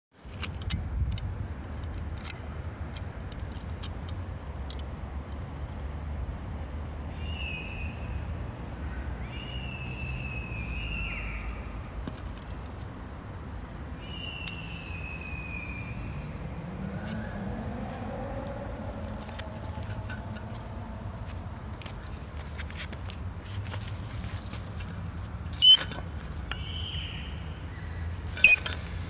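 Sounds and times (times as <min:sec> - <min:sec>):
low rumble of car: 0:00.3 - 0:29.0
shock absorber squealing: 0:25.6 - 0:26.0, 0:28.4 - 0:28.8.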